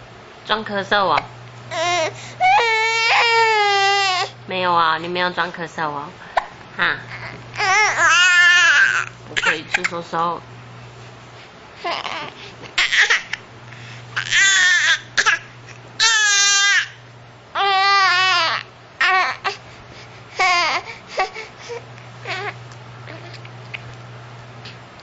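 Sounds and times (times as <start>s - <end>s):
steady low hum: 0.0s - 25.0s
baby crying and squealing: 1.7s - 4.4s, 7.1s - 9.1s, 11.8s - 13.4s, 14.2s - 15.4s, 16.0s - 17.0s, 17.6s - 19.6s, 20.4s - 23.4s.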